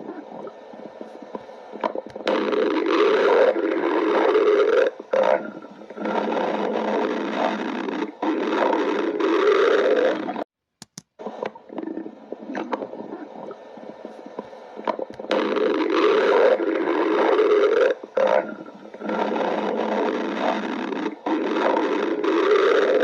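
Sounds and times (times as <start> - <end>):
stomach growling: 0.0 - 10.5, 11.3 - 23.0.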